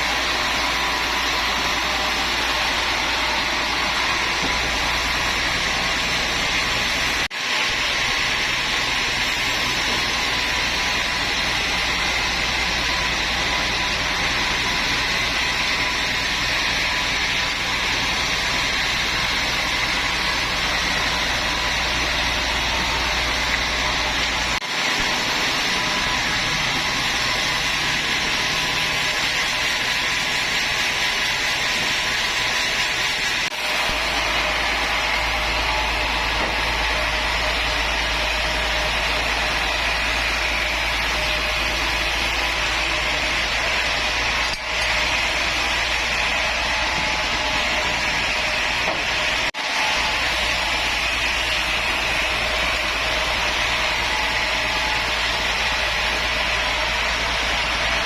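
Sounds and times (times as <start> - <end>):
woodworking machinery whining: 0.0 - 58.0.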